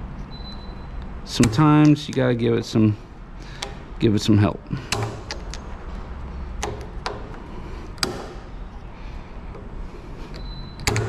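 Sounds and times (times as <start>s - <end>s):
sharp metal clicks: 0.4s - 2.4s, 3.4s - 4.0s, 4.8s - 8.8s, 9.5s - 11.0s.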